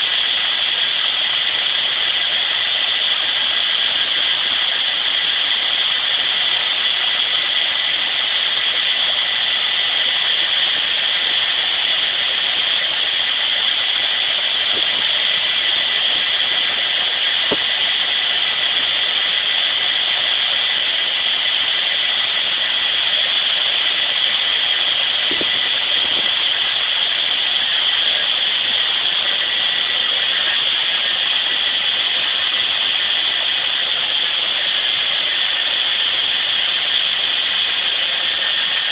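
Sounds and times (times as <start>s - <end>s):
faint high whine: 0.0s - 38.9s
harvest machinery drone: 0.0s - 38.9s.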